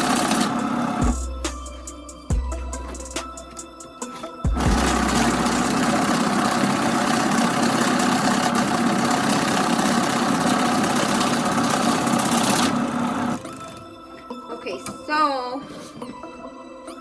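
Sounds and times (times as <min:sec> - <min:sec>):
money-counting machine whirring: 0:00.0 - 0:01.3, 0:04.5 - 0:13.9.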